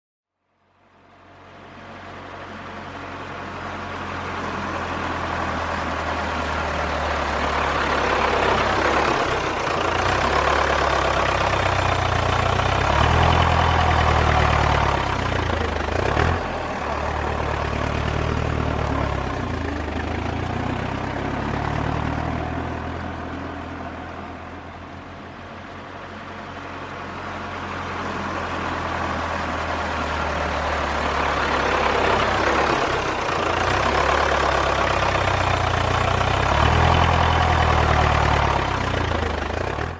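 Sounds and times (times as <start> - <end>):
diesel tractor engine running: 1.1 - 39.9.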